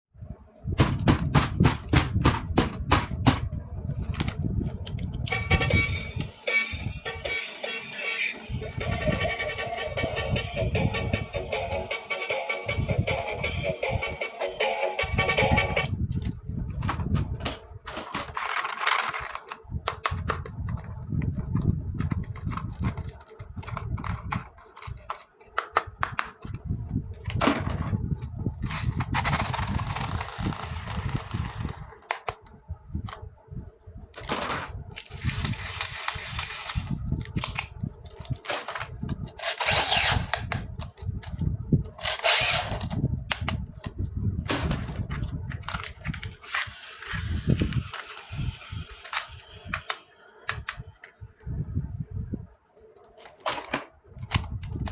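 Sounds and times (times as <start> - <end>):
plastic parts clicking and knocking: 0.8 - 6.4, 15.8 - 26.6, 27.2 - 33.2, 34.1 - 51.2, 53.0 - 54.9.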